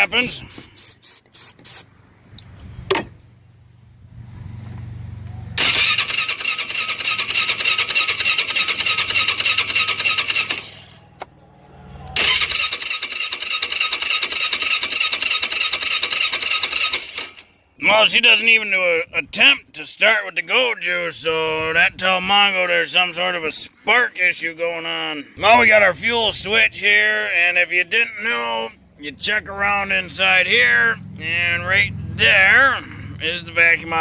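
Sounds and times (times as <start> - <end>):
electric starter cranking engine: 5.6 - 11.2, 12.1 - 17.6.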